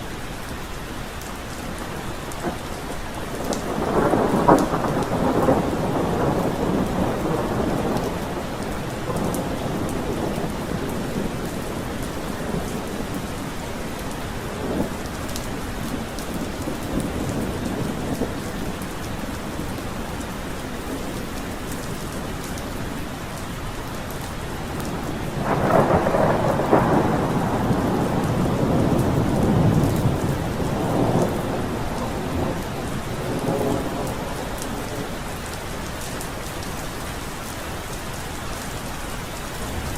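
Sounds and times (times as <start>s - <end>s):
steady rain: 0.0s - 39.9s
rolling thunder: 1.8s - 20.2s, 24.6s - 35.3s.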